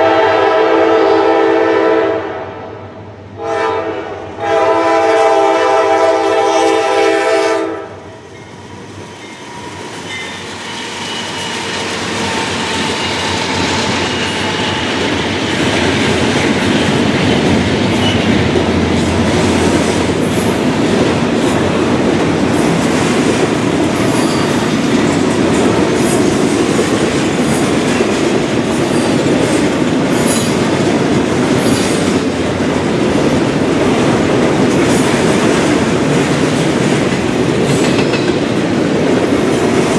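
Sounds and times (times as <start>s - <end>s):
locomotive air horn: 0.0s - 2.7s, 3.4s - 8.0s
train rumble: 3.3s - 39.9s
train wheels clacking over rail joints: 9.8s - 39.9s.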